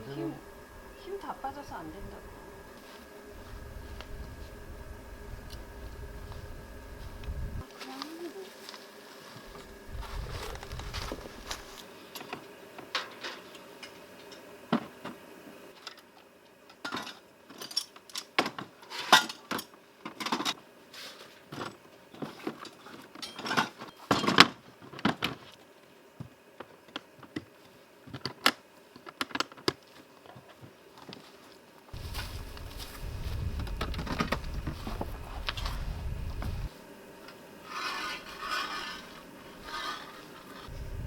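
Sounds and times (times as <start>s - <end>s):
dishes and utensils clattering: 16.8s - 20.6s, 21.5s - 24.5s.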